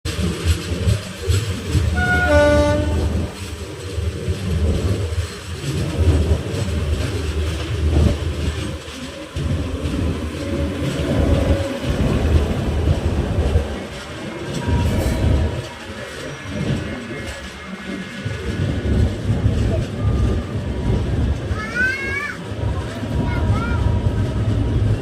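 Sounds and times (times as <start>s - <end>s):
train rumbling and rattling: 0.0s - 25.0s
train horn blast: 1.9s - 3.2s.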